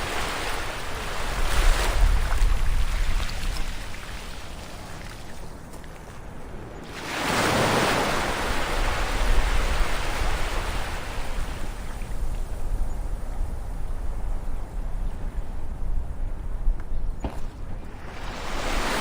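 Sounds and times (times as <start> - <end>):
waves breaking on shore: 0.0 - 12.5, 17.7 - 19.0
low rumble of sea: 0.0 - 19.0.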